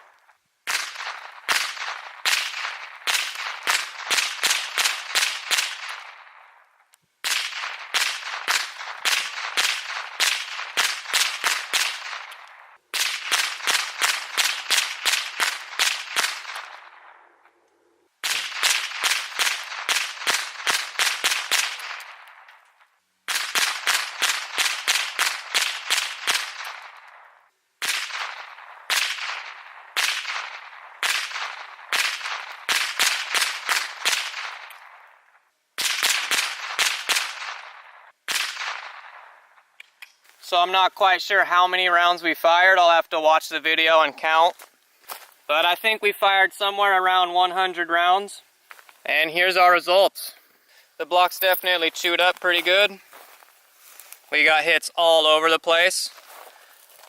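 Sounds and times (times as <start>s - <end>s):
rifle firing rapid shots: 0.7s - 6.4s, 7.2s - 17.3s, 18.2s - 22.5s, 23.3s - 35.2s, 35.8s - 39.7s.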